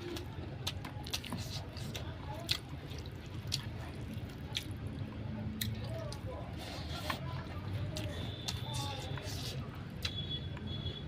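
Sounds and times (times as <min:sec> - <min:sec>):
wet eating sounds: 0:00.0 - 0:10.7.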